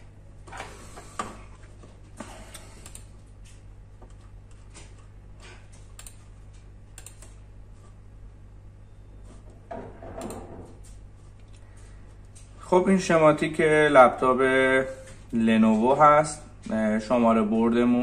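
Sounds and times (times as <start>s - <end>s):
low electrical hum: 0.0s - 18.0s
computer keyboard typing: 5.8s - 6.3s, 7.0s - 7.4s.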